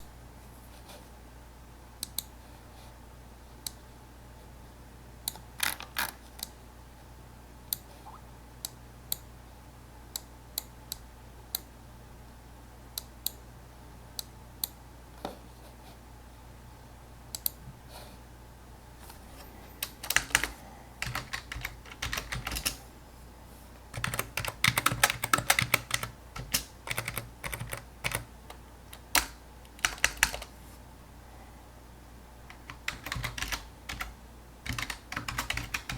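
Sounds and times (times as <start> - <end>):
low steady hum: 0.0 - 35.9
computer keyboard typing: 19.8 - 22.8, 23.9 - 28.3, 28.9 - 30.5, 32.5 - 35.9.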